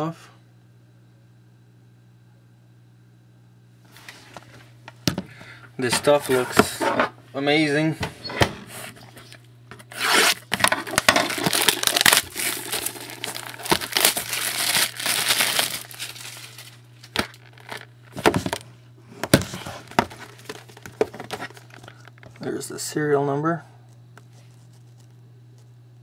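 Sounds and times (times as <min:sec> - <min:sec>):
low steady hum: 0:00.0 - 0:26.0
plastic wrap tearing and crinkling: 0:09.2 - 0:18.1
box handling clicks and knocks: 0:17.2 - 0:18.6, 0:19.2 - 0:21.9.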